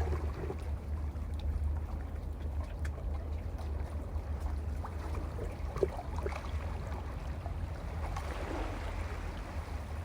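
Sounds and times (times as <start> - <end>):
small water splashes: 0.0 - 10.0.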